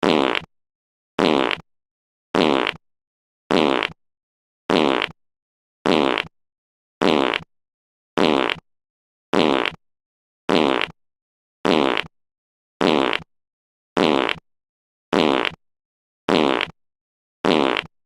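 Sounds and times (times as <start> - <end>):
fart sound effect: 0.0 - 0.5, 1.2 - 1.6, 2.4 - 2.8, 3.5 - 4.0, 4.7 - 5.2, 5.9 - 6.3, 7.0 - 7.5, 8.2 - 8.6, 9.4 - 9.8, 10.5 - 11.0, 11.6 - 12.1, 12.8 - 13.3, 14.0 - 14.4, 15.1 - 15.6, 16.3 - 16.8, 17.4 - 17.9.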